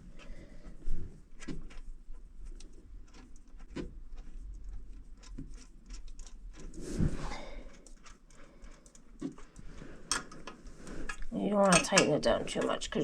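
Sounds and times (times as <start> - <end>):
small metal clicks: 5.2 - 6.8, 7.7 - 12.8.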